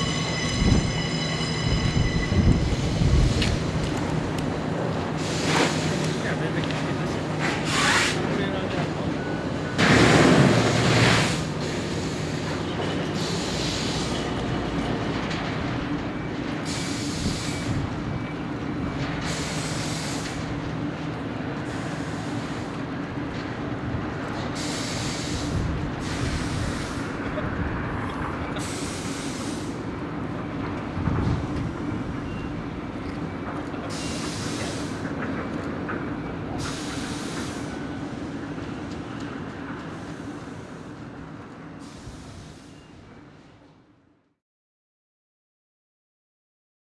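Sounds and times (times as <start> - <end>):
train rumbling on rails: 0.0 - 43.9
air hiss bursts: 7.6 - 8.3, 9.8 - 12.6, 13.2 - 14.3, 16.6 - 17.9, 19.3 - 20.4, 24.6 - 27.2, 28.6 - 29.8, 33.9 - 35.0, 36.6 - 37.8.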